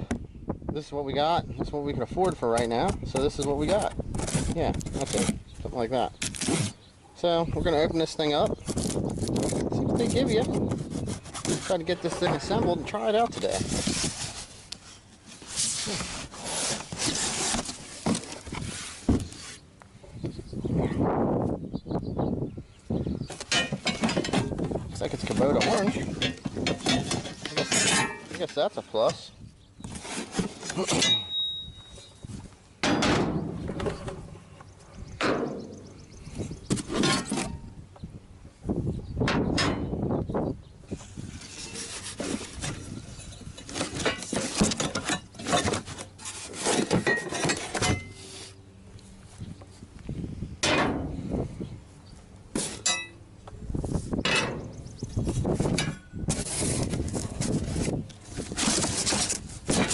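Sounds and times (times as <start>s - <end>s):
wind rumbling on microphone: 0.0s - 6.8s, 7.4s - 14.6s, 18.4s - 27.5s, 33.2s - 44.2s, 49.1s - 52.2s, 53.5s - 59.9s
knocks and scrapes of parts: 2.2s - 6.8s, 8.4s - 19.6s, 23.3s - 29.2s, 29.8s - 31.6s, 32.8s - 35.8s, 36.4s - 37.7s, 40.9s - 48.6s, 50.6s - 51.2s, 52.5s - 53.2s, 53.9s - 59.9s
rustling: 8.6s - 19.7s, 55.2s - 59.9s
metal parts clanking: 23.4s - 28.6s, 30.4s - 31.8s, 36.8s - 37.6s, 41.5s - 48.3s, 52.6s - 53.2s
metal clink ringing: 31.0s - 31.9s.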